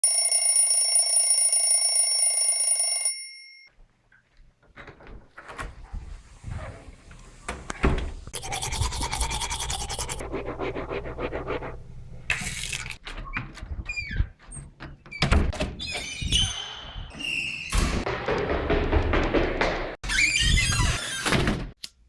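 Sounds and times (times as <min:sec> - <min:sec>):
fast even scratching: 0:08.4 - 0:11.8.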